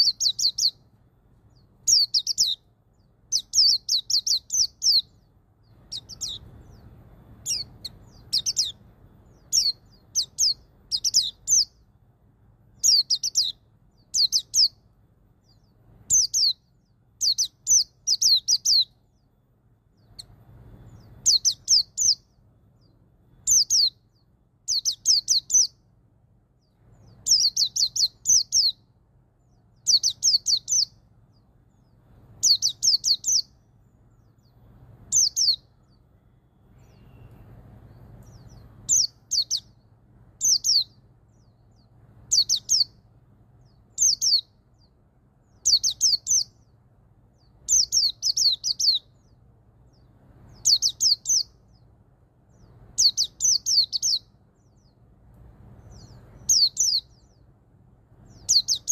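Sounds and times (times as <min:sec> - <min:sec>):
bird singing short high notes: 0:05.9 - 0:11.8, 0:35.1 - 0:39.8.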